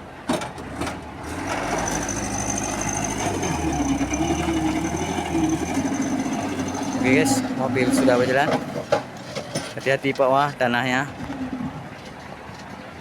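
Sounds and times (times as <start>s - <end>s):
diesel truck engine pulling away: 0.5s - 9.2s.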